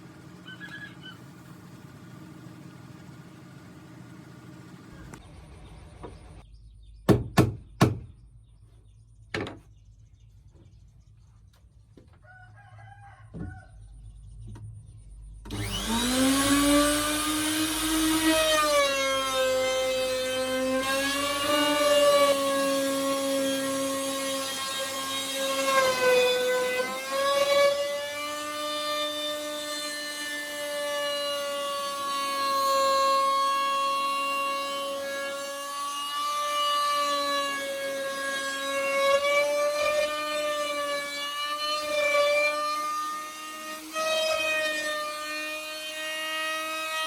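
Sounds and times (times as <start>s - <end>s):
power tool whining on wood: 15.4s - 47.0s.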